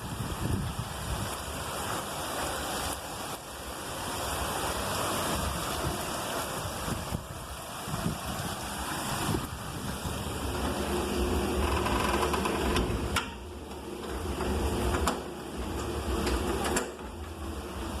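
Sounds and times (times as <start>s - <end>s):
heavy rain: 0.0s - 18.0s
low rumble: 6.7s - 18.0s.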